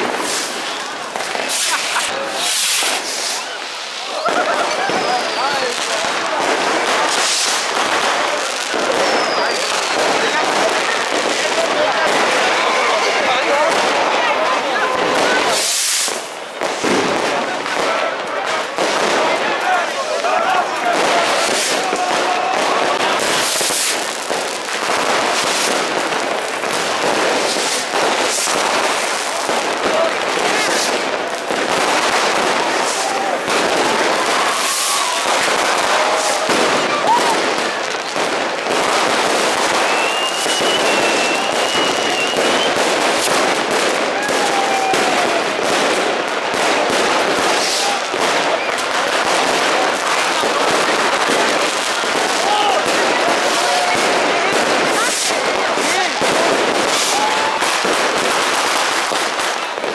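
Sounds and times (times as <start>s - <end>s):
crackling pops: 0.0s - 59.9s
fireworks and firecrackers banging: 0.0s - 59.9s
faint firework whistles: 0.1s - 3.7s, 4.7s - 5.7s, 8.7s - 10.2s, 38.9s - 45.3s.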